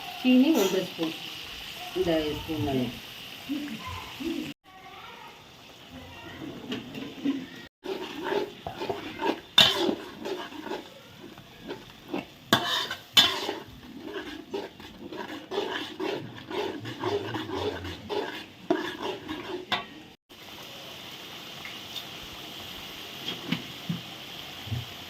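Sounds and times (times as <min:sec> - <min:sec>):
ladle scraping a pan: 0:06.4 - 0:20.2.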